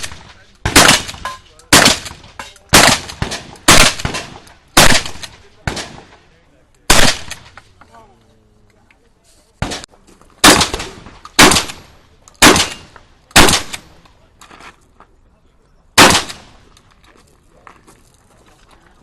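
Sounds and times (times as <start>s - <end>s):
shotgun shots echoing: 0.0s - 6.3s, 6.9s - 7.8s, 9.6s - 14.0s, 16.0s - 16.7s.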